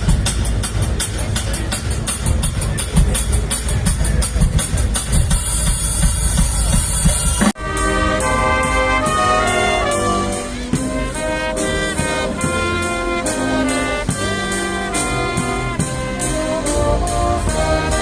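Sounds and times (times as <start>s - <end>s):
brass band playing: 5.4s - 18.0s.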